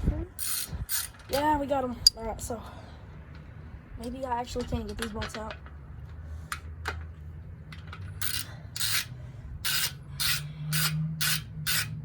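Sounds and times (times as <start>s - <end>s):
socket ratchet rasping: 8.0s - 12.0s.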